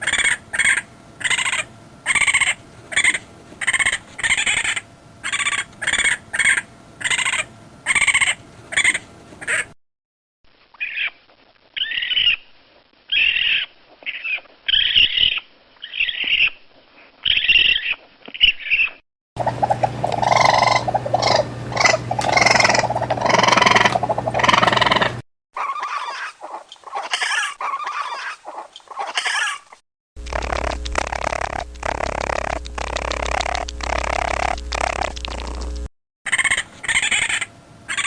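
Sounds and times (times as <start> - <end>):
raccoon chittering: 0.0 - 9.7, 11.8 - 12.4, 13.1 - 16.6, 17.2 - 29.6, 30.3 - 38.0
steady low hum: 0.0 - 9.8, 19.4 - 25.2, 30.2 - 38.0.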